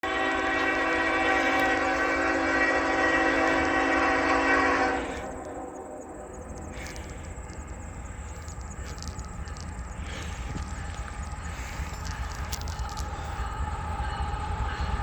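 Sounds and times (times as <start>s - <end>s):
locomotive air horn chord: 0.0s - 7.1s
train rumbling by: 0.0s - 15.0s
train wheel clicks: 5.2s - 15.0s.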